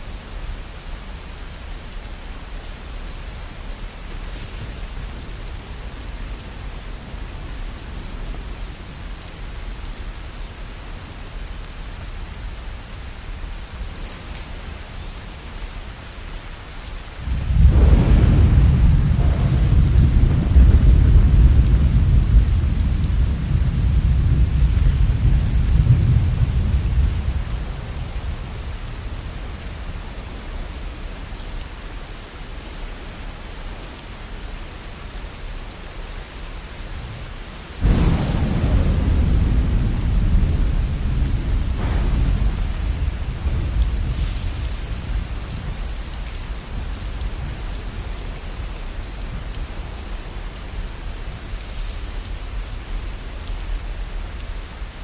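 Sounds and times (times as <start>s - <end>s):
heavy rain: 0.0s - 55.0s
thunder rumbling: 17.2s - 30.5s, 37.8s - 53.0s.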